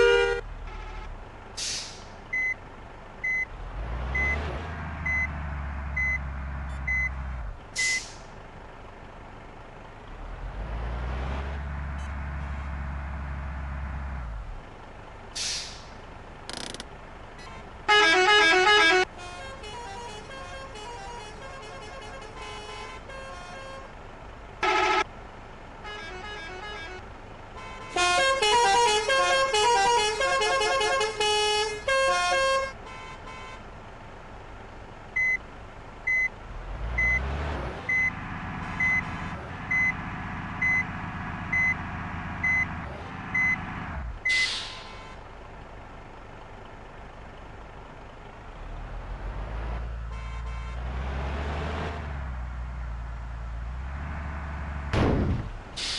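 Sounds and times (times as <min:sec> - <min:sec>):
bus horns playing melodies: 0:00.0 - 0:01.1, 0:17.4 - 0:24.0, 0:24.6 - 0:25.1, 0:25.8 - 0:33.7, 0:50.0 - 0:51.0
diesel engine revving: 0:00.0 - 0:32.8, 0:33.8 - 0:55.9.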